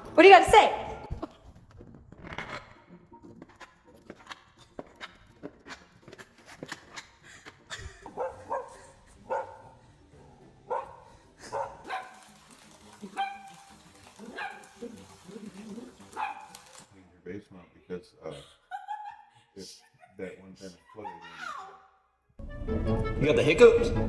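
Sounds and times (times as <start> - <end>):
dog barking and yipping: 8.1 - 9.8, 10.7 - 16.8.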